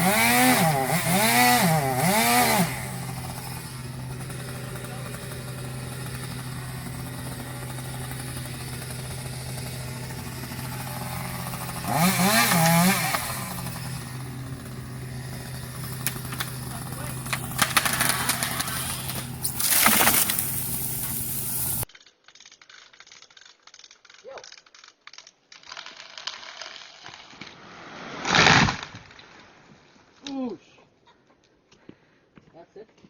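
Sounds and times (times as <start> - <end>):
chainsaw idling: 0.0 - 21.9
sharp cracks: 0.0 - 30.4
loud crash: 27.3 - 29.6.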